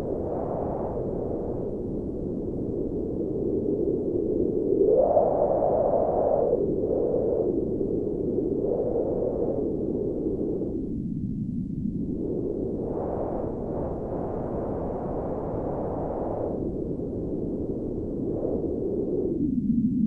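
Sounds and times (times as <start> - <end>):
low rushing wind: 0.0 - 20.0.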